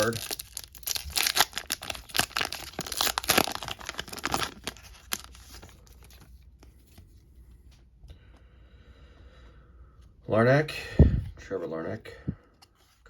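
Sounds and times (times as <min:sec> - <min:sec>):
wrapper ripping and crinkling: 0:00.0 - 0:06.3
handling of card pack: 0:00.0 - 0:07.3.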